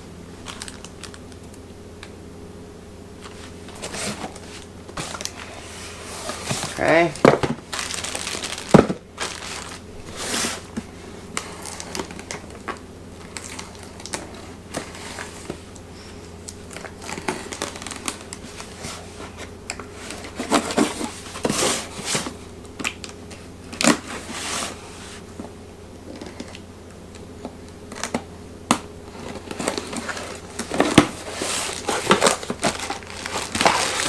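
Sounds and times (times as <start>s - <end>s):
plastic and cardboard rustling: 0.3s - 1.6s, 3.2s - 34.0s.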